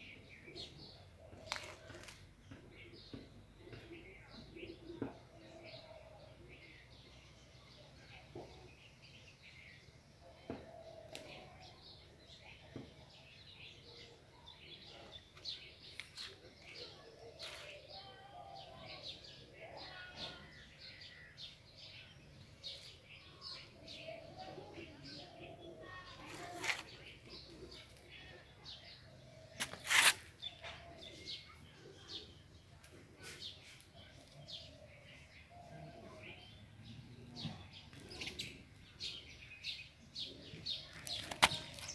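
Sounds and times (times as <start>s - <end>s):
small birds chirping: 0.0s - 41.9s.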